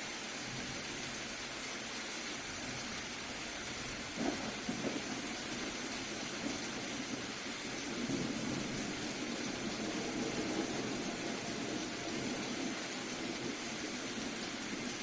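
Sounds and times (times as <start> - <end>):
soft rain falling: 0.0 - 15.0.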